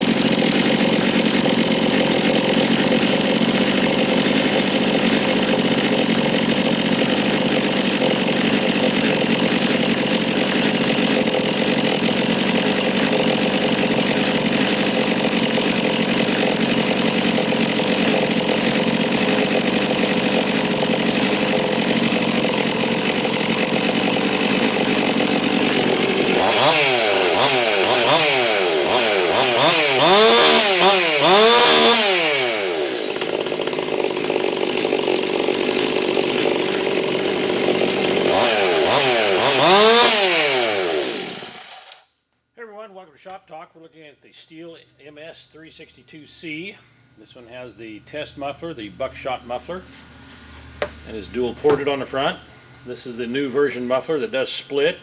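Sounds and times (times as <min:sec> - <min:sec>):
chainsaw running and revving: 0:00.0 - 0:42.1.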